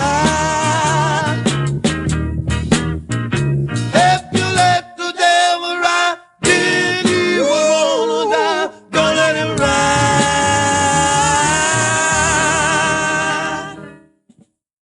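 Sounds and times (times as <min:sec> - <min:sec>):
gospel vocal group singing: 0:00.0 - 0:01.6, 0:03.9 - 0:14.1.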